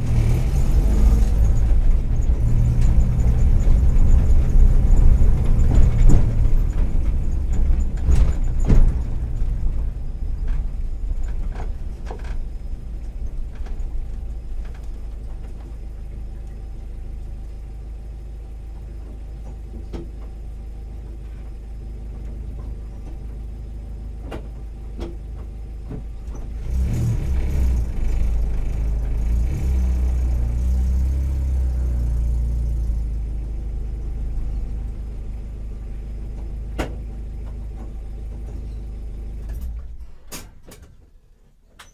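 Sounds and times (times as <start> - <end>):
car engine running: 0.0 - 40.3.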